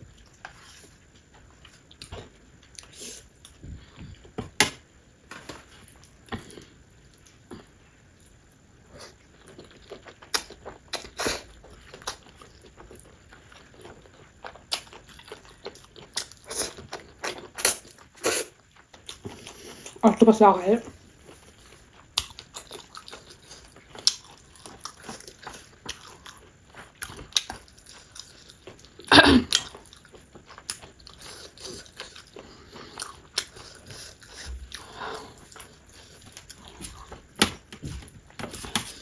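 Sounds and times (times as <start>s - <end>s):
chewing noodles: 21.1s - 37.2s.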